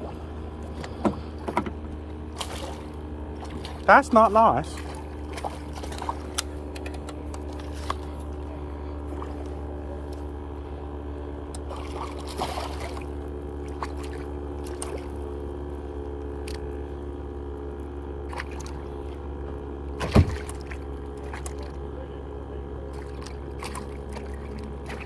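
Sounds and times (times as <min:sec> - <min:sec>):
water trickling and splashing: 0:00.0 - 0:08.5, 0:11.6 - 0:15.5, 0:18.2 - 0:21.8, 0:22.9 - 0:25.0.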